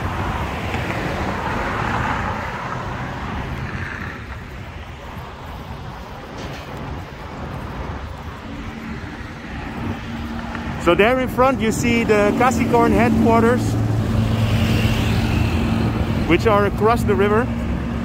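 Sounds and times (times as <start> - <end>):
vehicle rushing past: 0.0 - 5.8, 6.8 - 18.0
low traffic rumble: 0.0 - 18.0.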